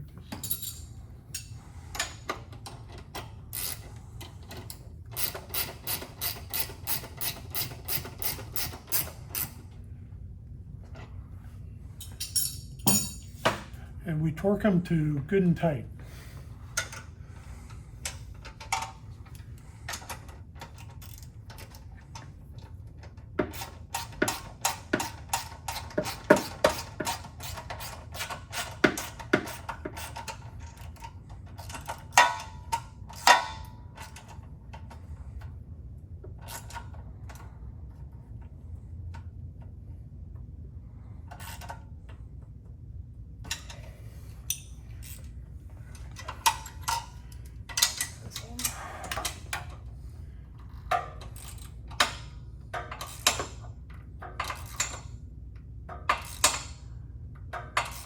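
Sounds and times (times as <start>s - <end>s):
ratchet wrench clicking: 3.5s - 3.9s, 5.2s - 9.5s, 51.3s - 52.2s, 56.1s - 56.8s.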